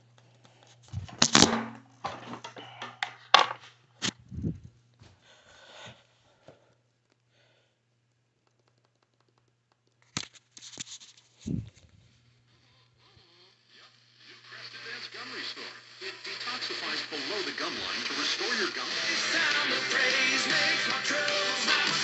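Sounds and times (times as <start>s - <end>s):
faint low hum: 0.0s - 8.6s
sharp clicks and knocks: 8.4s - 10.4s.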